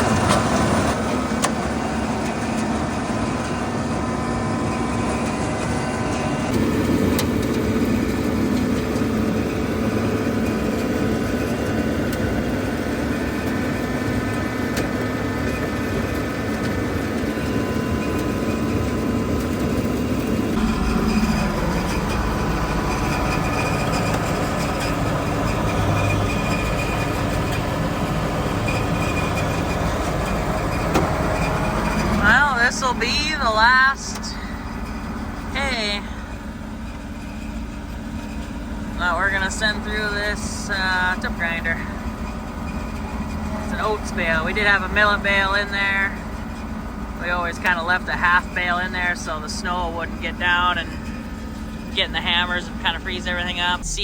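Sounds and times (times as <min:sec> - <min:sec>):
heavy engine running: 0:00.0 - 0:54.0
deep low rumble: 0:20.5 - 0:28.5, 0:53.7 - 0:54.0.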